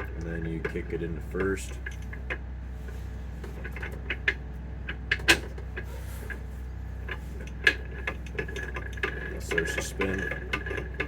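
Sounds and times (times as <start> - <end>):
steady low hum: 0.0 - 11.0
gearbox metallic clicks and clacks: 7.1 - 11.0.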